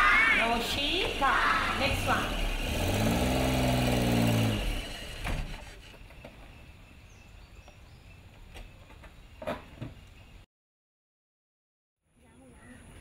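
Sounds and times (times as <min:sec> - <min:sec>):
vehicle engine running: 0:00.0 - 0:06.0.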